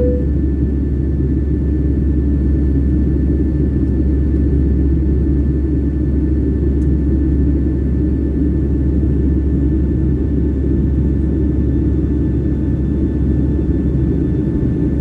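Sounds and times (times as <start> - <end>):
faint steady whine: 0.0 - 0.4
airliner cabin engine rumble: 0.0 - 15.0.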